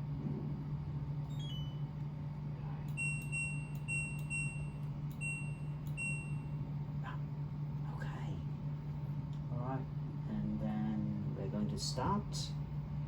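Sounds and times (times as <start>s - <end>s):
washing machine panel beeping: 1.3s - 1.9s, 3.0s - 6.5s.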